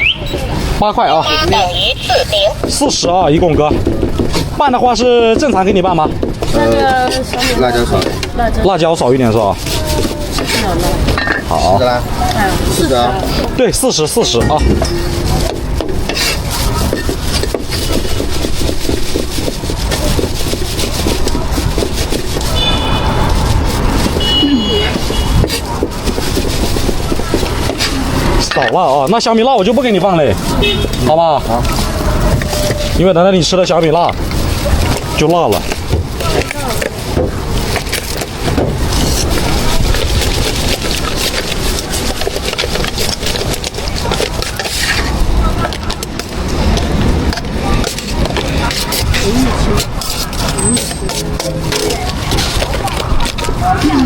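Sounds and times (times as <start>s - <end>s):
quick knocking of chopping: 3.6s - 4.7s.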